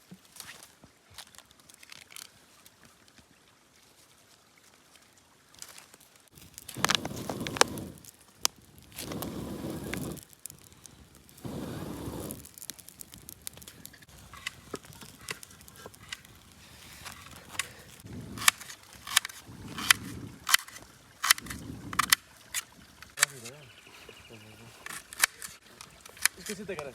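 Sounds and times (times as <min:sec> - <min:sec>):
twigs rustling: 0:00.0 - 0:03.1, 0:05.5 - 0:26.9
sticks cracking and snapping: 0:01.2 - 0:02.4, 0:10.2 - 0:11.4, 0:12.3 - 0:23.3, 0:24.9 - 0:26.9.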